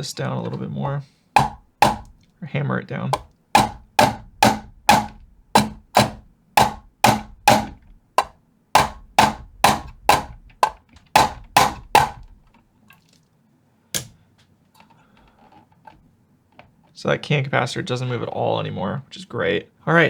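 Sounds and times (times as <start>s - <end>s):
hammer blows on metal: 1.4s - 2.2s, 3.2s - 12.3s.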